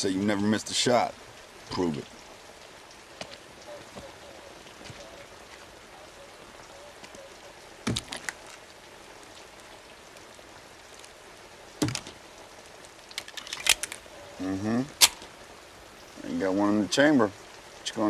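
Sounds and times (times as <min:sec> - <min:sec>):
steady rain: 0:00.0 - 0:18.0
gun being loaded clicks: 0:13.1 - 0:14.0, 0:15.0 - 0:15.3.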